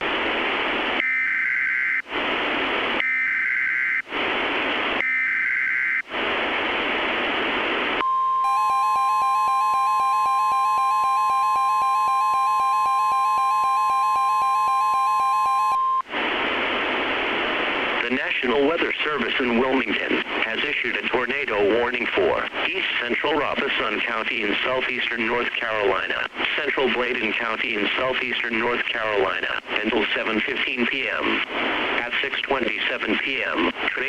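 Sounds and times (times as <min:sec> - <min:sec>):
radio static hiss: 0:00.0 - 0:05.0, 0:05.7 - 0:34.0
data-tone bursts: 0:08.0 - 0:16.0
loud steady alert tone: 0:08.0 - 0:16.0.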